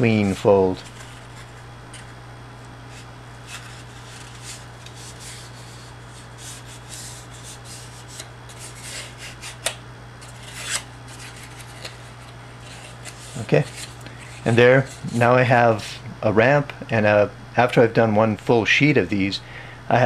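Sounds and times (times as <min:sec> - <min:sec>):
paper rustling: 0:00.0 - 0:02.2, 0:10.2 - 0:15.2
low electrical hum: 0:00.0 - 0:20.0.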